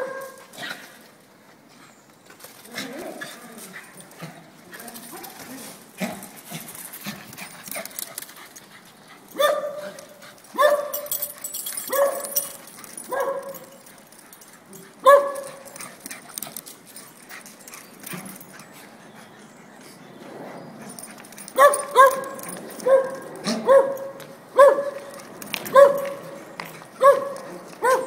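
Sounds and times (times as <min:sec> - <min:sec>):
dog barking: 0:09.4 - 0:10.0, 0:10.6 - 0:11.1, 0:11.9 - 0:12.4, 0:13.1 - 0:13.6, 0:15.0 - 0:15.6, 0:21.6 - 0:25.0, 0:25.7 - 0:26.2, 0:27.0 - 0:28.0.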